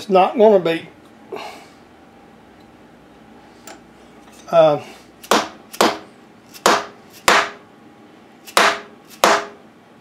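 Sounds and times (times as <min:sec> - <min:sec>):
sharp knocks on a workpiece: 0:05.2 - 0:07.6, 0:08.5 - 0:09.6.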